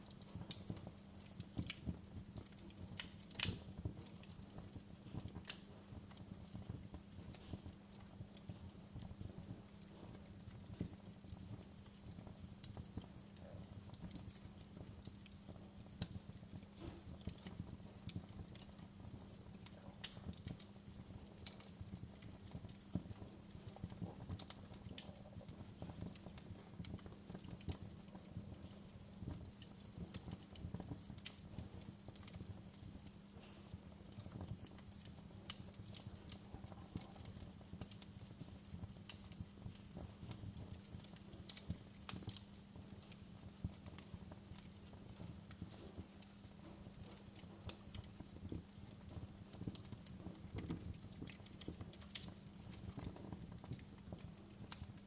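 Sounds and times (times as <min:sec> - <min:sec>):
fireplace fire crackling: 0:00.0 - 0:55.0.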